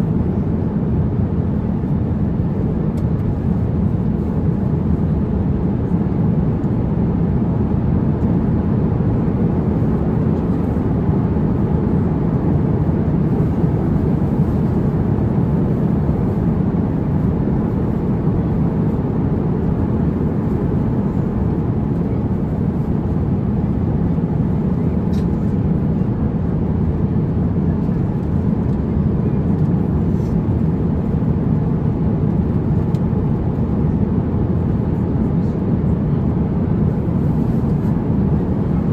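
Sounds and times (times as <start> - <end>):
airliner cabin rumble: 0.0 - 38.9.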